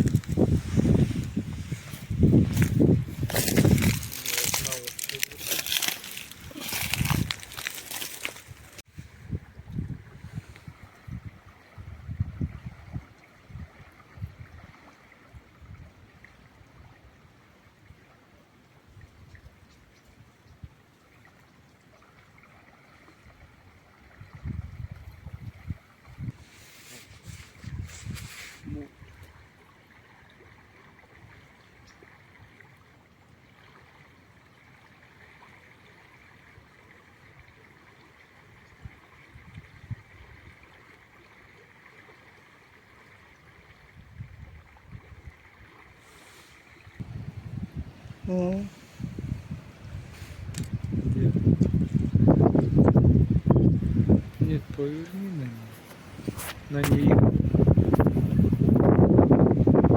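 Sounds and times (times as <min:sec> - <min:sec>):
wind buffeting microphone: 0:00.0 - 0:05.2, 0:06.1 - 0:07.7, 0:08.4 - 0:14.6, 0:24.2 - 0:26.5, 0:27.2 - 0:29.3, 0:47.0 - 0:59.9
flowing river water: 0:00.0 - 0:59.9.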